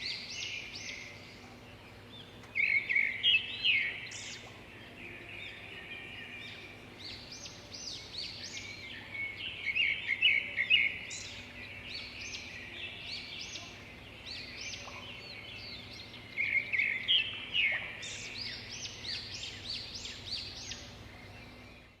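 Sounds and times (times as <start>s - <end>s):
faint low hum: 0.0s - 22.0s
songbirds chirping and singing: 0.0s - 22.0s.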